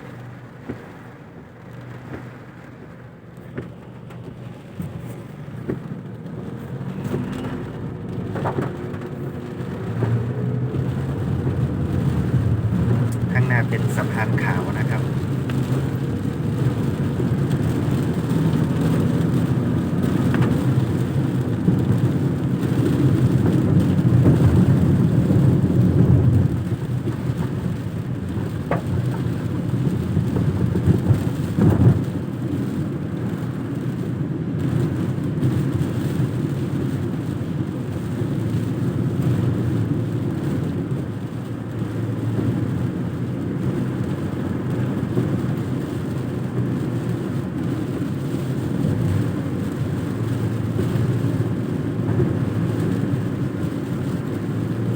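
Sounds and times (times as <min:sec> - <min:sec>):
car engine and tyre rumble: 0:00.0 - 0:54.9
rain on car: 0:00.0 - 0:54.9.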